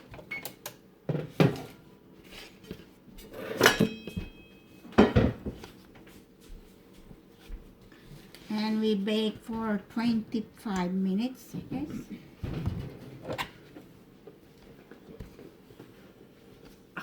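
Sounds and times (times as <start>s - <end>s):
metallic ring: 3.6s - 4.7s
pans and dishes knocking: 5.0s - 5.6s.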